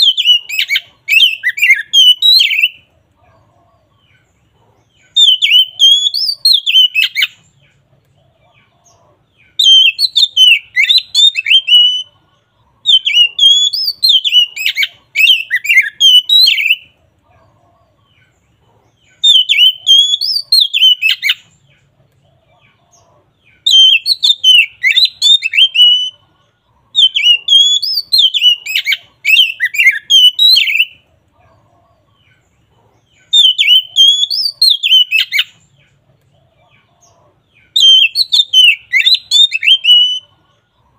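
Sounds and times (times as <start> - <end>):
bird singing whistled notes: 0.0 - 2.9, 5.0 - 7.5, 9.4 - 12.2, 12.8 - 17.0, 19.0 - 21.6, 23.5 - 26.2, 26.9 - 31.0, 33.2 - 35.7, 37.5 - 40.3.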